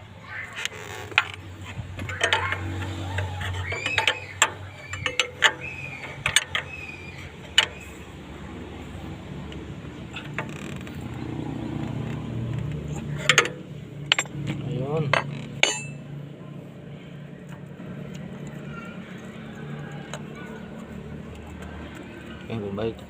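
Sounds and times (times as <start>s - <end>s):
hand tools clicking on metal: 0.6s - 8.0s, 15.1s - 16.0s.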